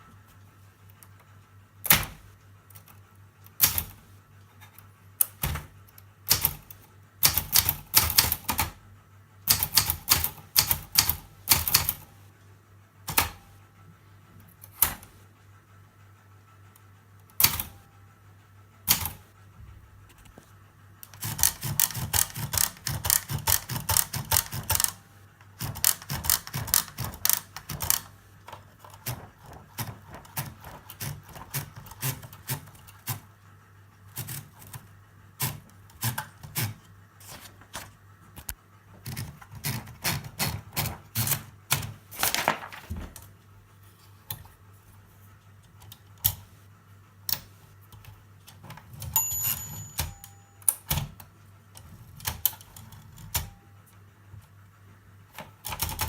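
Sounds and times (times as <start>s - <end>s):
typewriter keystroke clacks: 1.9s - 4.0s, 5.2s - 8.8s, 9.5s - 12.1s, 13.1s - 13.4s, 17.4s - 17.8s, 18.9s - 19.2s, 21.1s - 25.0s, 25.6s - 33.2s, 39.0s - 43.3s, 51.8s - 53.6s, 55.3s - 56.0s.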